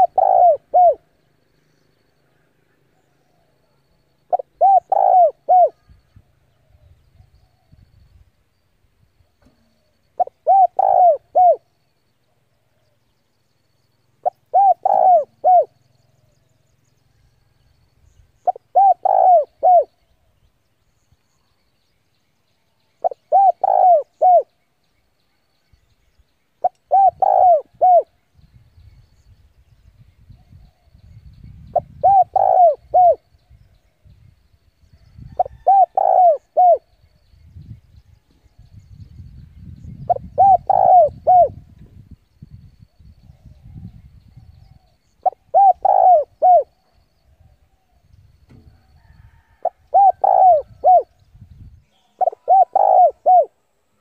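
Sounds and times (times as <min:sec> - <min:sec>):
dove cooing: 0:00.0 - 0:01.1, 0:04.3 - 0:06.0, 0:10.2 - 0:11.7, 0:14.2 - 0:15.8, 0:18.4 - 0:20.0, 0:23.0 - 0:24.5, 0:26.6 - 0:28.1, 0:31.7 - 0:33.3, 0:35.2 - 0:36.9, 0:40.1 - 0:41.7, 0:44.6 - 0:46.8, 0:49.3 - 0:51.2, 0:52.1 - 0:53.6.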